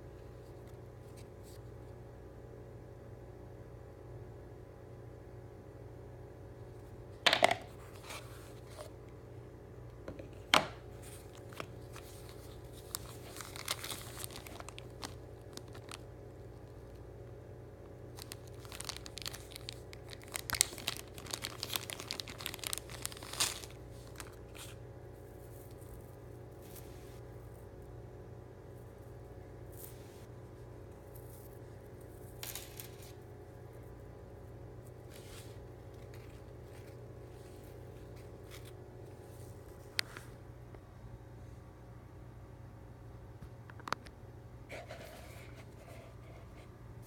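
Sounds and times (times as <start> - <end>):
packaging crackling and rustling: 11.0 - 17.0, 18.1 - 26.8
packaging ripping: 11.2 - 16.0, 18.2 - 24.7.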